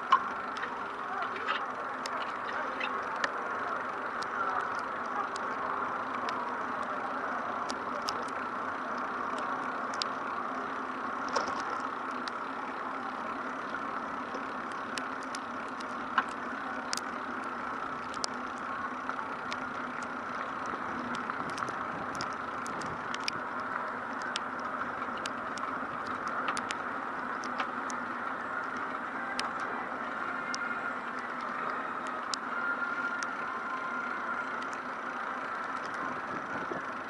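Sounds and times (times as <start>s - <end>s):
city noise hiss: 0.0s - 37.0s
sharp ticks: 7.6s - 29.7s.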